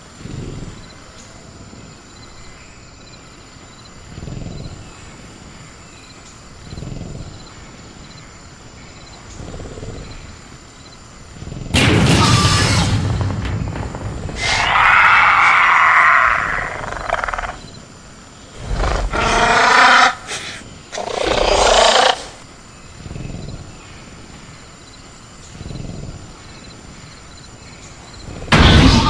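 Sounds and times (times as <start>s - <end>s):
creature call: 14.4s - 17.6s
creature growling roars: 14.4s - 17.6s, 18.6s - 22.4s.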